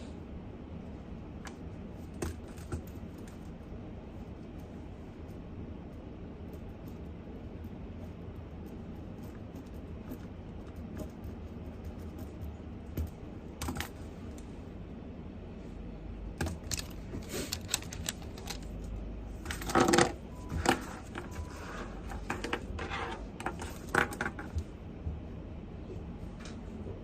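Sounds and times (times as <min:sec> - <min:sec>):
low steady hum: 0:00.0 - 0:27.0
objects handled on a desk: 0:19.4 - 0:24.7.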